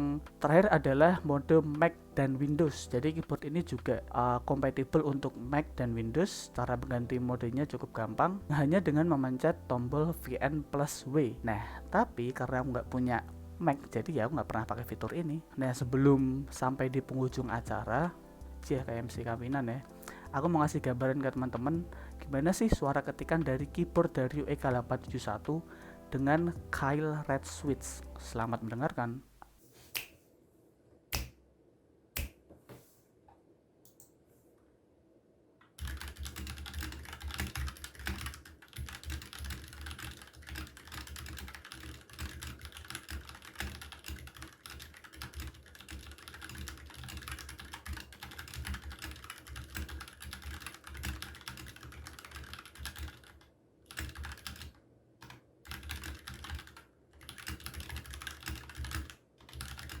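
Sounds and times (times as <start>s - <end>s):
typing on mechanical keyboard: 1.2s - 4.1s, 16.9s - 25.5s, 35.8s - 60.0s.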